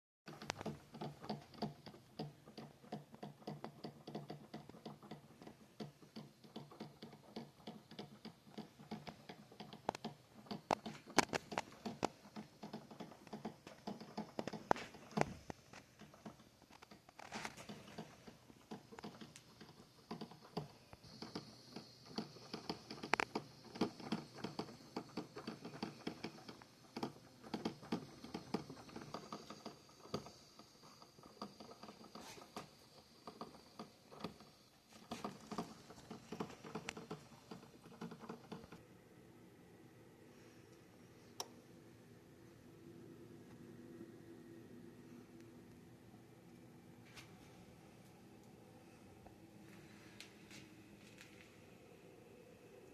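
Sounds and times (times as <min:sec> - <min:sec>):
coffee maker popping and ticking: 0:00.3 - 0:38.8
faint steady hiss: 0:00.3 - 0:52.9.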